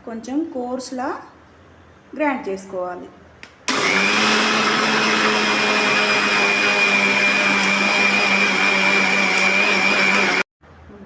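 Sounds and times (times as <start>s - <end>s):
mixer grinder motor whining: 3.7s - 10.5s.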